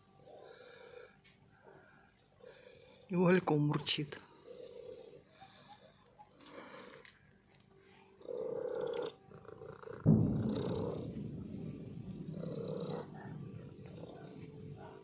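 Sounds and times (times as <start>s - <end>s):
cat purring: 3.7s - 7.1s, 7.8s - 15.0s.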